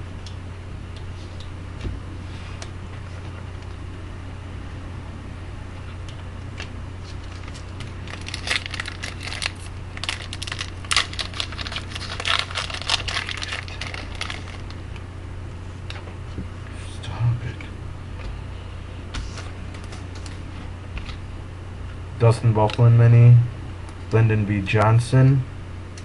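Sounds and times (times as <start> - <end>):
steady low hum: 0.0 - 26.0
wrapper tearing and crinkling: 7.2 - 14.8.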